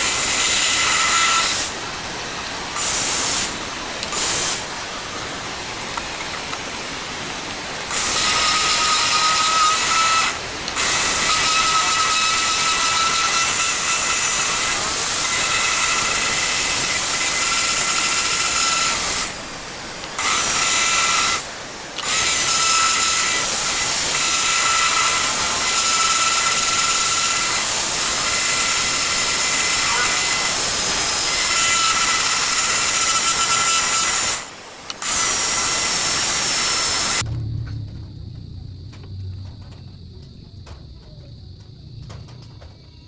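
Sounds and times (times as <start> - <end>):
power tool whining: 7.9 - 19.4, 20.1 - 37.2.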